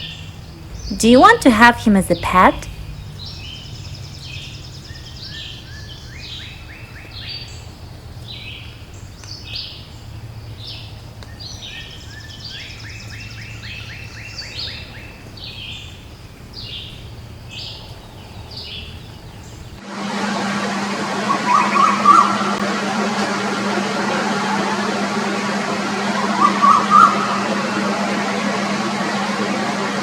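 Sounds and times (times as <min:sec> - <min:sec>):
low background hum: 0:00.0 - 0:19.8.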